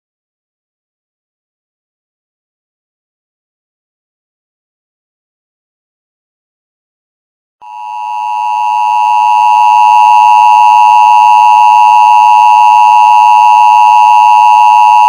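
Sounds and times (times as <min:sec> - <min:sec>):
two-tone alert signal: 0:07.6 - 0:15.0.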